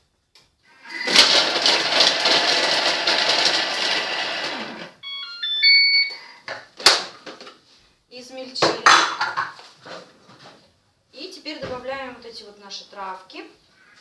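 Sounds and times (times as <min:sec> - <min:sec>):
food processor blades chopping: 0:00.9 - 0:05.0
short electronic beeps: 0:05.0 - 0:06.4.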